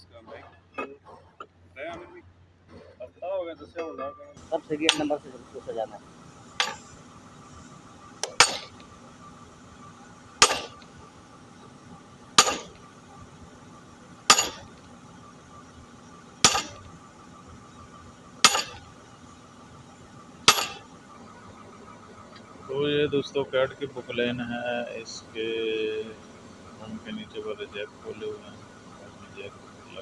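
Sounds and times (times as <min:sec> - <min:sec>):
hammer striking metal: 0:04.4 - 0:15.5, 0:16.2 - 0:19.0, 0:20.4 - 0:20.9.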